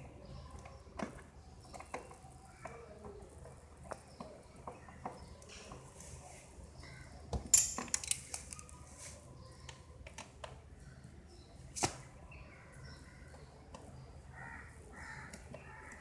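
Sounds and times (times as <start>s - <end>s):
metal tools clinking and knocking: 7.5s - 8.7s.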